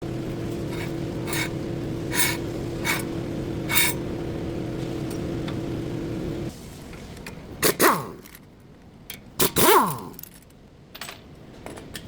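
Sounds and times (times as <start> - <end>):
steady low hum: 0.0 - 11.6
brakes scraping: 0.4 - 4.1.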